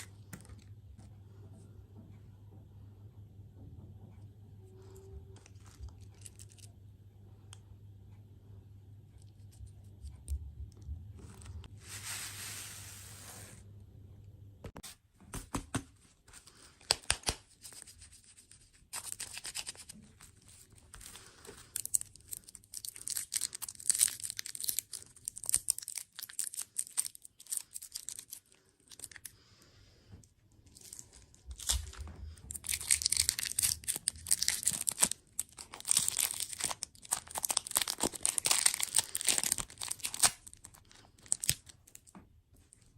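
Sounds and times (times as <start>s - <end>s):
packaging crinkling and tearing: 5.4s - 6.7s, 19.0s - 29.3s, 30.7s - 42.1s.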